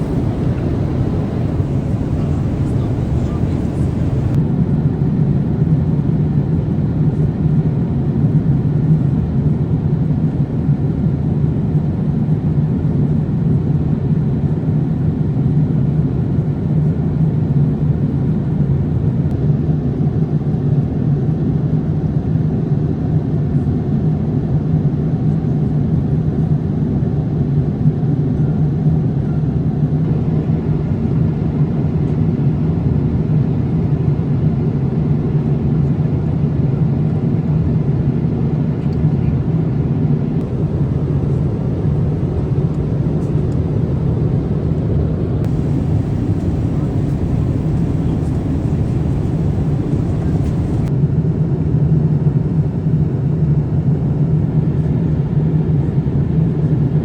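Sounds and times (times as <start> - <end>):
airliner cabin engine rumble: 0.0 - 13.4, 40.4 - 57.0.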